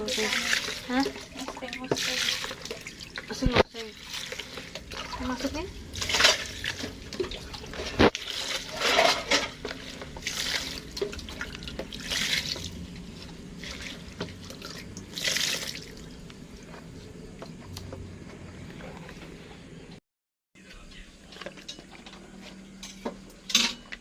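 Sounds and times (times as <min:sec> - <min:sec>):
water trickling: 0:00.0 - 0:08.9, 0:09.6 - 0:16.8
water splashing and sloshing: 0:00.0 - 0:19.9.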